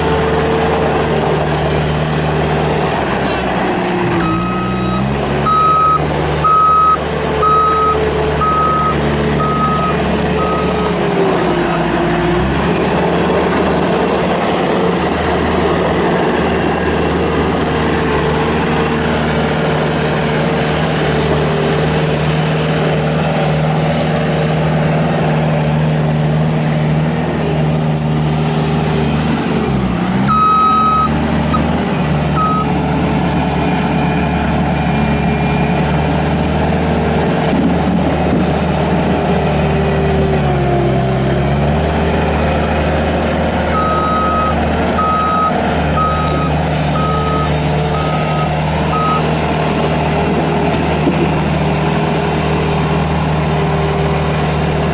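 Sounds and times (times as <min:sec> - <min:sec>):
diesel engine running: 0:00.0 - 0:54.9
backup alarm beeping: 0:04.2 - 0:11.0, 0:30.3 - 0:31.6, 0:32.4 - 0:32.7.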